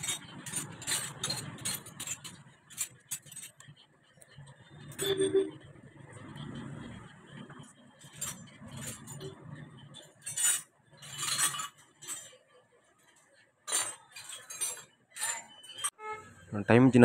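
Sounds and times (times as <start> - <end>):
metal tools clinking: 0.0 - 3.8, 8.0 - 12.5, 13.6 - 16.0.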